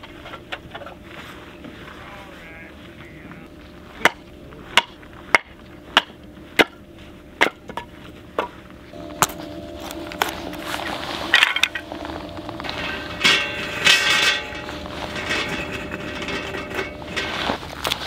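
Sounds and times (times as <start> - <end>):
ringing clatter: 9.0 - 17.6.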